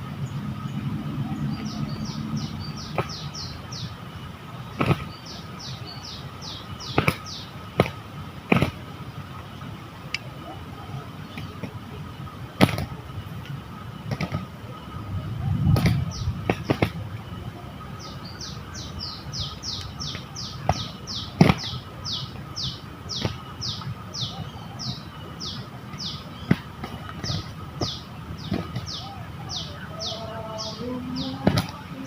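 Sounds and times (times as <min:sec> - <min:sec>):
small bird calling: 0:00.2 - 0:04.0, 0:04.7 - 0:08.8, 0:15.3 - 0:32.0.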